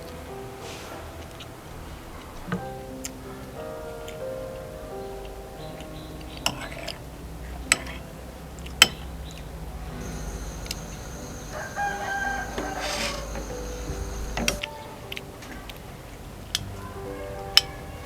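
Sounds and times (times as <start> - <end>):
thin high tone: 9.9 - 15.8
rooster crowing: 10.0 - 14.9.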